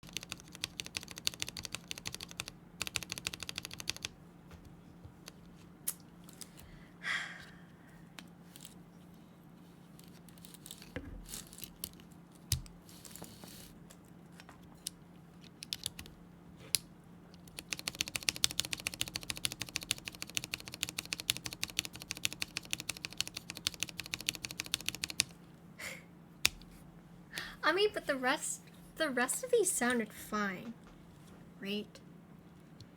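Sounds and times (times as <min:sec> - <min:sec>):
keyboard keys clicking: 0:00.0 - 0:04.1, 0:14.8 - 0:16.2, 0:17.4 - 0:25.3.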